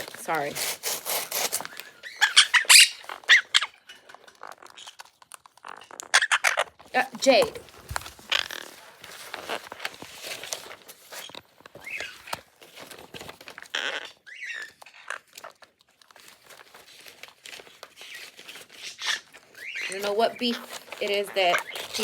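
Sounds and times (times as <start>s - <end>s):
parrot tearing paper: 0.0s - 22.0s
parrot chirps: 1.4s - 5.0s, 5.6s - 6.8s, 13.7s - 15.4s, 18.0s - 22.0s.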